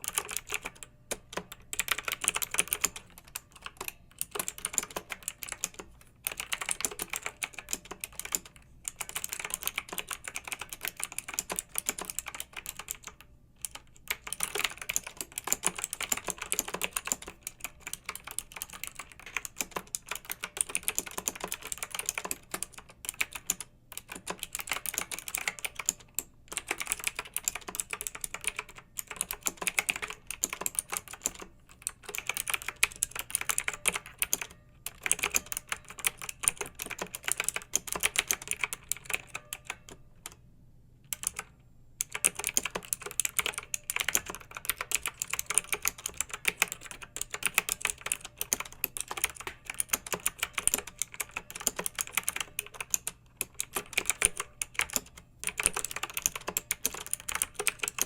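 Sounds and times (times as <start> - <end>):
mechanical keyboard typing: 0.0 - 40.4, 41.1 - 58.0.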